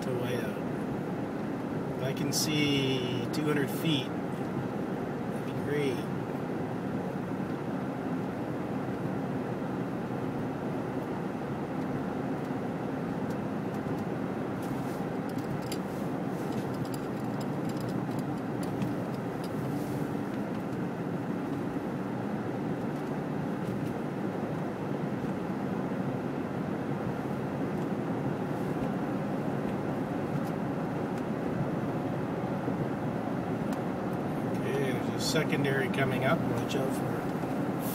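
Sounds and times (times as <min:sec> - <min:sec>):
car interior road drone: 0:00.0 - 0:37.9.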